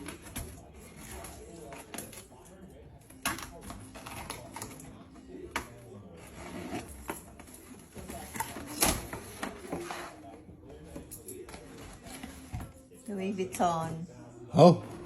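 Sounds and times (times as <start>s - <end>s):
box and wrapping rustling: 5.7s - 12.9s.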